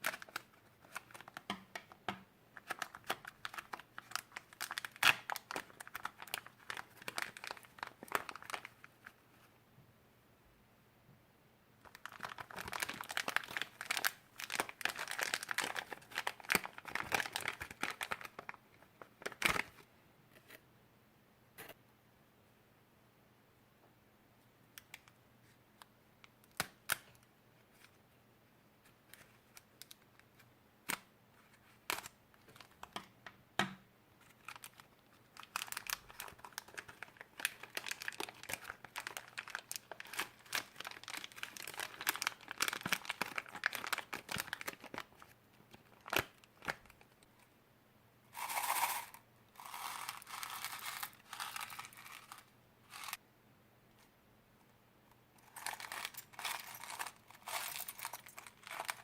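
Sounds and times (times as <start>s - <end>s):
slime crackling and crinkling: 2.6s - 9.1s, 11.8s - 19.7s, 34.2s - 47.1s, 49.6s - 53.2s, 55.4s - 59.0s.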